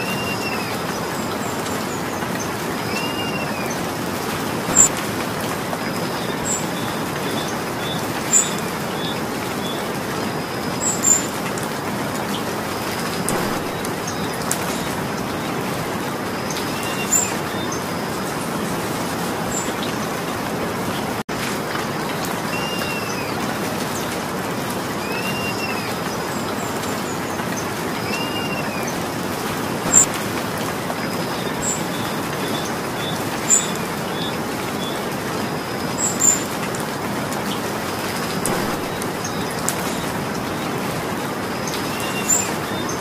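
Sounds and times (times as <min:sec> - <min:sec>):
steady rain: 0:00.0 - 0:43.0
bird chirping: 0:04.7 - 0:05.0, 0:13.2 - 0:15.6, 0:37.9 - 0:40.7.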